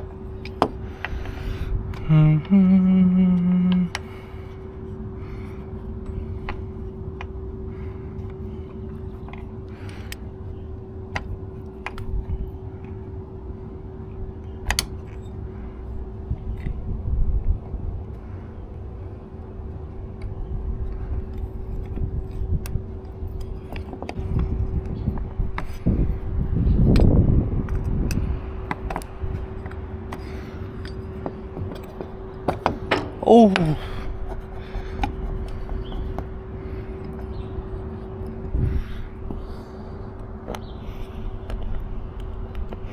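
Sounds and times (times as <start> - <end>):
low hum: 0.0 - 42.9
low rumble: 0.0 - 42.9
sharp clicks and knocks: 26.9 - 36.3.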